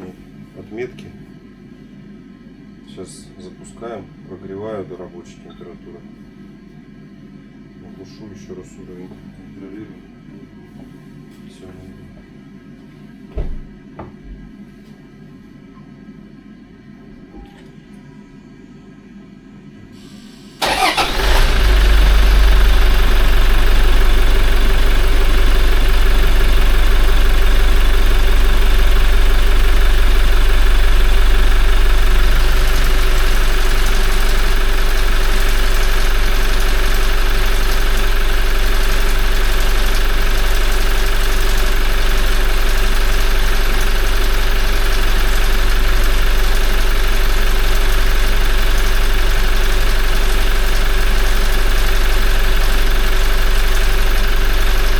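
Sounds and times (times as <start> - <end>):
diesel engine starting and idling: 20.0 - 54.9.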